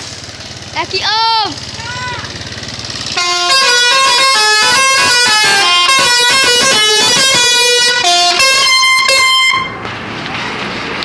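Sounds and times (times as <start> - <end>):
musical air horns tune: 3.2 - 9.8.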